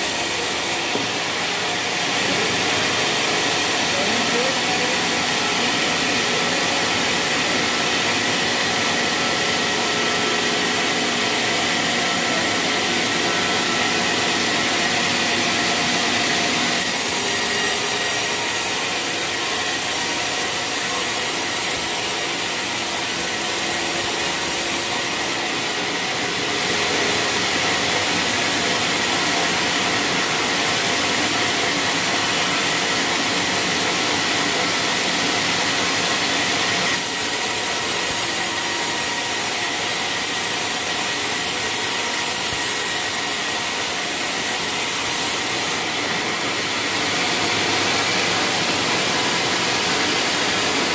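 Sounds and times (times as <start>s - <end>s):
sawmill saw cutting wood: 0.0s - 50.9s.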